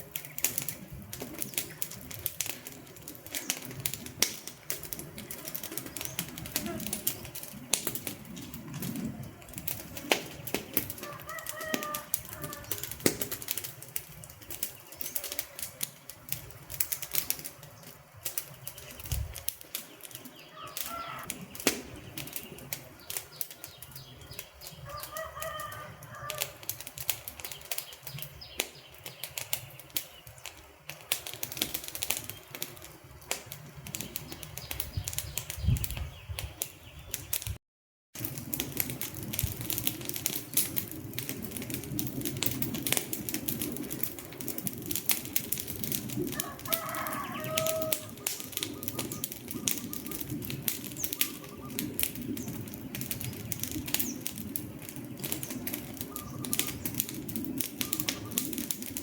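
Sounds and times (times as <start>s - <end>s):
wood fire crackling: 0.0s - 37.6s, 38.2s - 59.0s.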